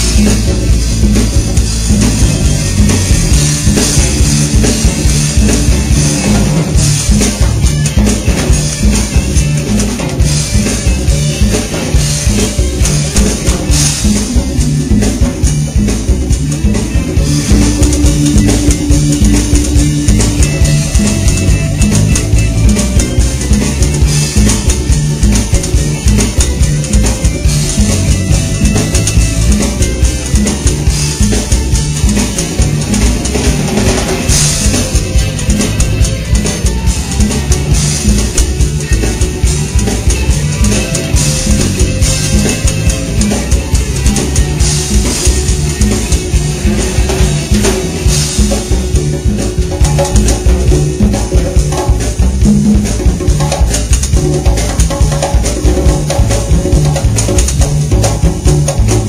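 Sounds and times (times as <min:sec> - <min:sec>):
drum kit beat: 0:00.0 - 0:59.0
guitar: 0:00.0 - 0:59.0.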